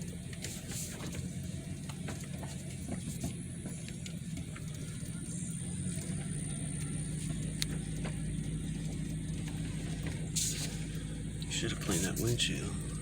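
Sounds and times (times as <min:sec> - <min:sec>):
engine and road noise in a cabin: 0:00.0 - 0:13.0.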